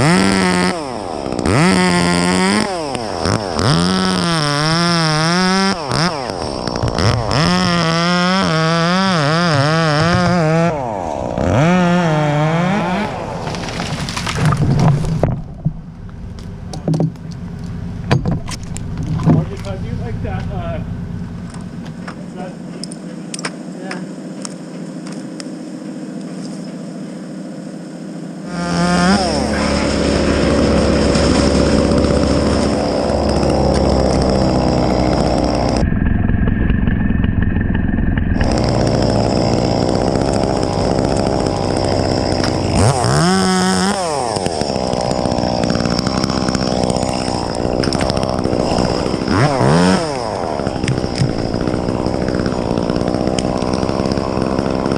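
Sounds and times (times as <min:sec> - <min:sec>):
chainsaw revving: 0:00.0 - 0:15.4, 0:17.4 - 0:26.3, 0:28.2 - 0:35.8, 0:38.2 - 0:54.9
low steady engine: 0:13.2 - 0:28.5.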